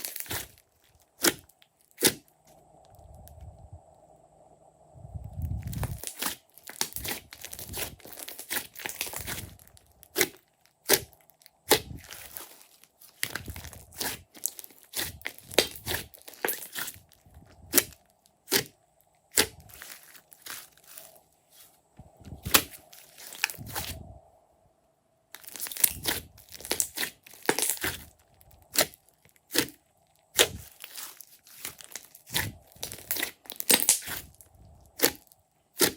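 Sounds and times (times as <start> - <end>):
air pockets popping in slime: 0.0 - 0.6, 5.7 - 12.6, 13.2 - 18.7, 19.3 - 21.0, 22.4 - 24.0, 25.4 - 35.2
hands squishing slime: 0.0 - 2.2, 5.6 - 18.7, 19.3 - 21.7, 22.4 - 24.0, 25.4 - 35.9.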